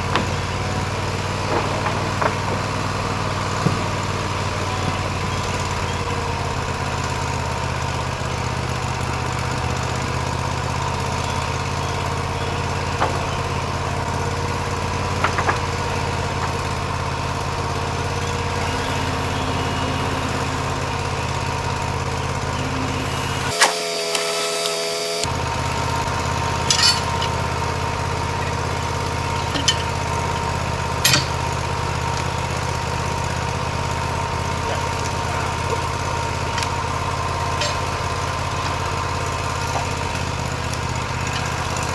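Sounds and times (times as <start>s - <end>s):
sawmill engine running: 0.0s - 41.9s
short pitched sound: 16.0s - 25.3s.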